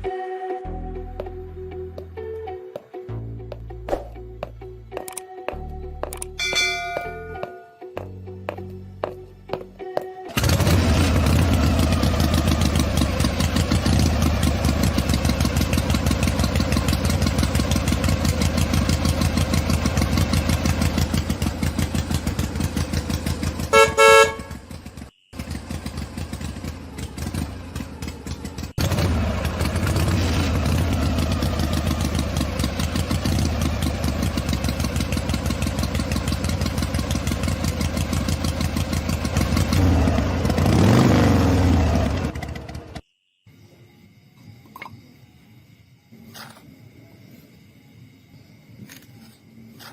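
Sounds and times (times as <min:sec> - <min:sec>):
engine chugging: 0:05.9 - 0:43.1
horn honk: 0:23.2 - 0:25.0.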